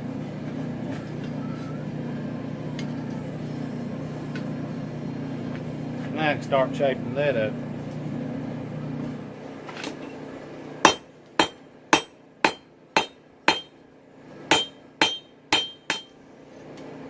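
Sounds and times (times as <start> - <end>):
hammer striking metal on anvil: 10.9 - 13.8, 14.5 - 16.2.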